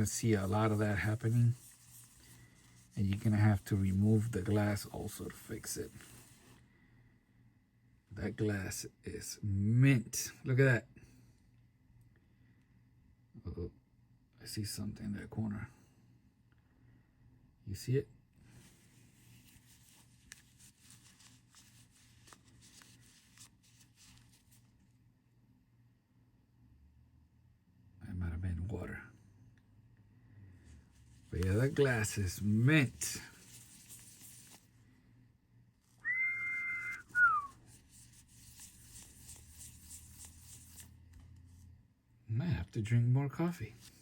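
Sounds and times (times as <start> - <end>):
faint rustling: 0.0 - 6.8, 18.4 - 25.0, 30.6 - 35.1
person whistling: 36.0 - 37.6.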